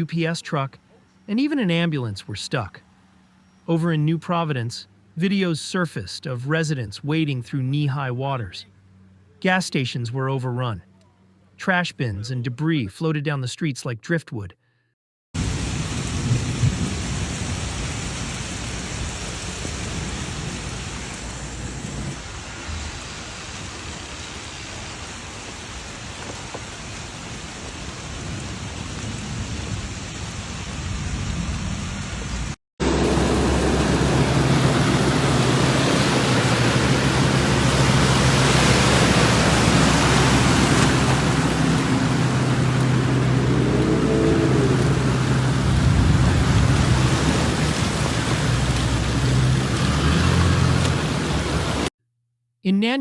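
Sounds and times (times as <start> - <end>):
heavy rain pouring: 15.4 - 51.9
steady low hum: 32.8 - 49.1
low rumble: 32.8 - 49.9.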